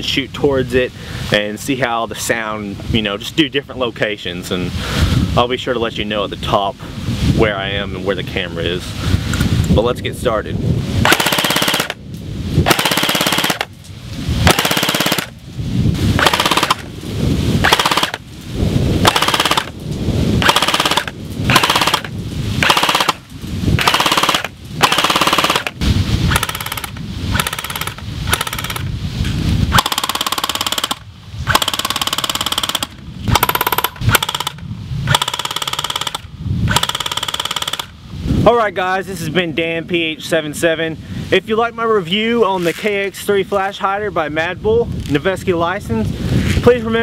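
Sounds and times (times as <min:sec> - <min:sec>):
airsoft rifle firing bursts: 0:11.0 - 0:12.0, 0:12.7 - 0:13.7, 0:14.4 - 0:15.4, 0:16.2 - 0:16.9, 0:17.6 - 0:18.2, 0:19.0 - 0:19.7, 0:20.4 - 0:23.2, 0:23.8 - 0:28.9, 0:29.8 - 0:37.9.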